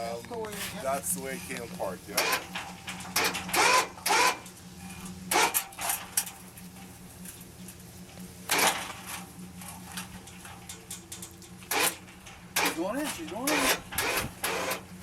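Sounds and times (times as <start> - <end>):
steady low hum: 0.0 - 15.0
metal clanks and knocks: 1.4 - 6.4, 8.5 - 14.8.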